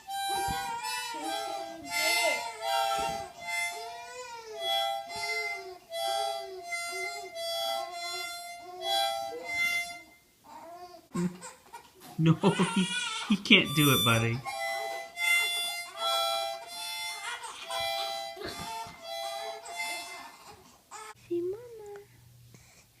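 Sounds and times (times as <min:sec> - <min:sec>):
harmonica notes and chords: 0:00.0 - 0:10.3, 0:12.4 - 0:20.3.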